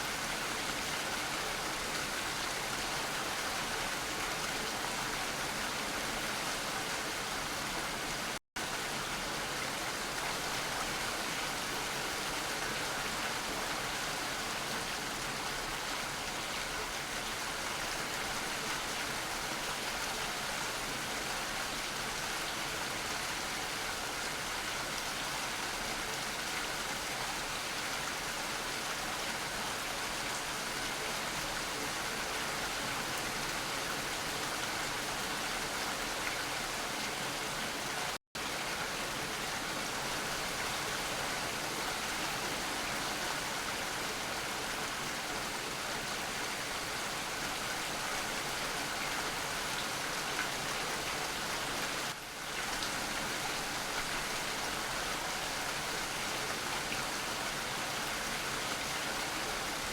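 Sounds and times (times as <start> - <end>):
steady rainfall: 0.0 - 59.9.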